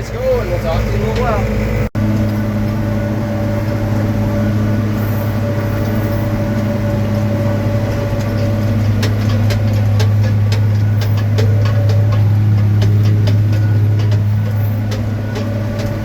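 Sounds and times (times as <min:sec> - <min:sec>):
tractor engine running: 0:00.0 - 0:16.0
baler clicks and rattles: 0:03.4 - 0:16.0.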